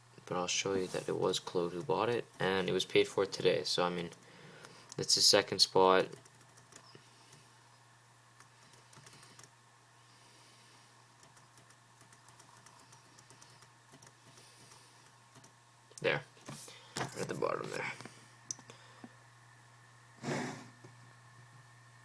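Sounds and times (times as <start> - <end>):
low steady hum: 0.0 - 22.0
typing on computer keyboard: 6.1 - 6.9, 8.6 - 9.5, 11.2 - 15.5.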